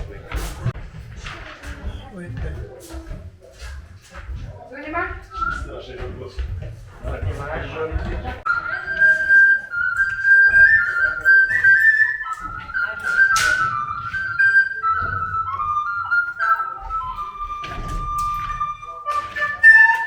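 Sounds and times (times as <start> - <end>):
flute-like slow melody: 8.5 - 20.0.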